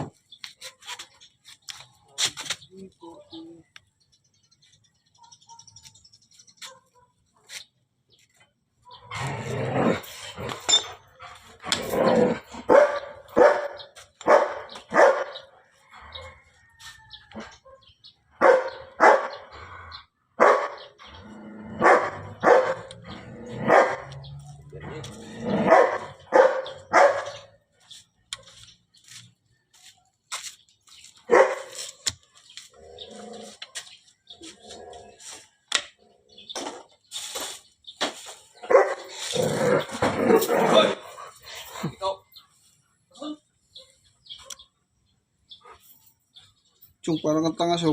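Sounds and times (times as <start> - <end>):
dog barking: 5.2 - 5.9, 6.6 - 7.2, 12.6 - 15.6, 17.4 - 19.5, 20.4 - 21.0, 21.8 - 24.3, 25.6 - 27.5, 31.3 - 31.8, 38.6 - 39.1.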